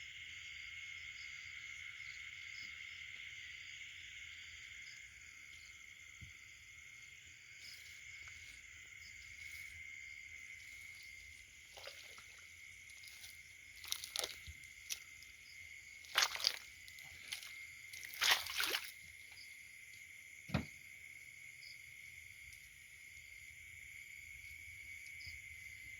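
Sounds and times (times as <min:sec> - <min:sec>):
insects chirring: 0:00.0 - 0:25.9
wet squelches in mud: 0:10.4 - 0:19.5.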